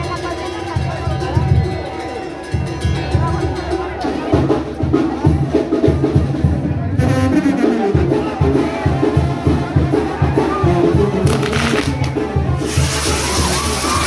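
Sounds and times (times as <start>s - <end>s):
brass band music: 6.3s - 14.0s.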